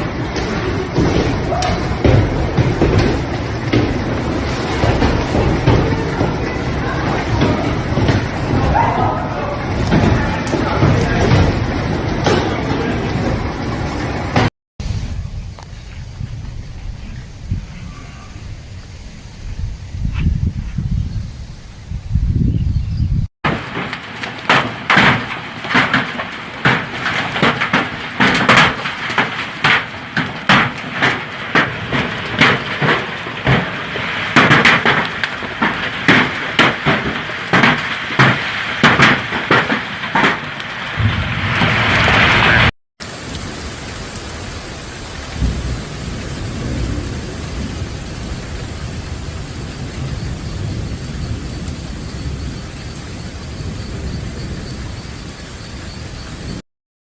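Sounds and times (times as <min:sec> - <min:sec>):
heavy rain: 0:00.0 - 0:22.4, 0:23.4 - 0:56.6
gusting wind: 0:00.0 - 0:56.6
sharp irregular hits: 0:23.4 - 0:42.6.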